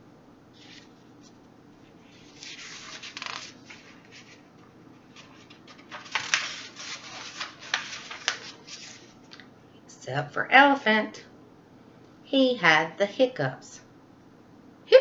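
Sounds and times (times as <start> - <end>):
paper page turning: 0.6 - 4.5, 5.1 - 9.2
paper crackles and taps: 5.1 - 8.9.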